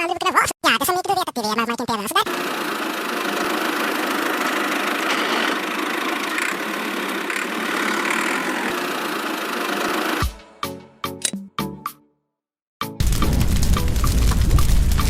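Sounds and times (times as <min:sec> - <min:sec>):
small engine running: 0:02.2 - 0:10.3.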